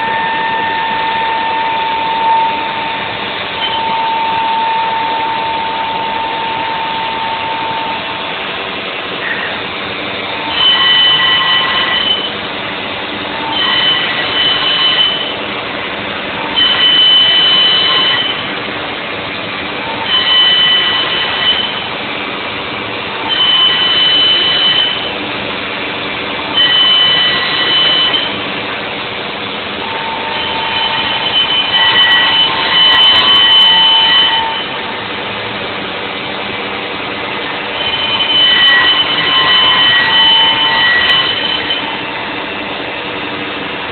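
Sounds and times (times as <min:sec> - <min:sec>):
router spindle running: 0:00.0 - 0:08.5, 0:13.2 - 0:15.4, 0:29.8 - 0:35.0, 0:37.7 - 0:42.3
high cutter whine: 0:00.0 - 0:43.9.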